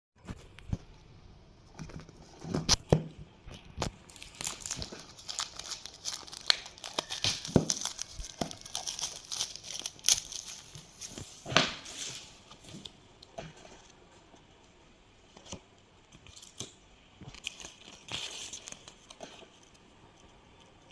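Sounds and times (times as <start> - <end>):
packaging crinkling: 3.5 - 12.9.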